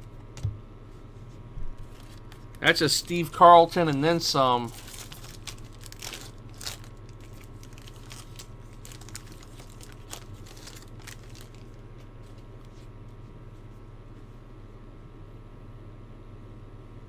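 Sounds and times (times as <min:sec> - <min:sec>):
low steady hum: 0:00.0 - 0:17.0
cards and wrapper handled: 0:01.8 - 0:12.8.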